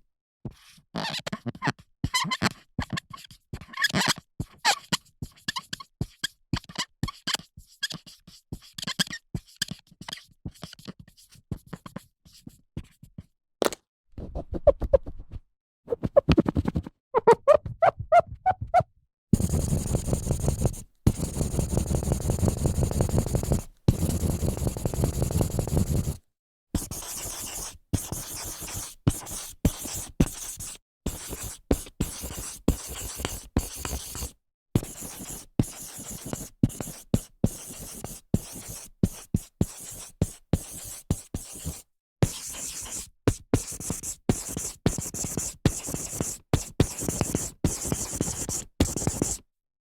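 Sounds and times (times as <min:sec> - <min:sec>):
dry-erase marker strokes: 0:19.4 - 0:26.2, 0:26.8 - 0:49.4
rubbing across whiteboard: 0:19.4 - 0:26.2, 0:26.8 - 0:49.4.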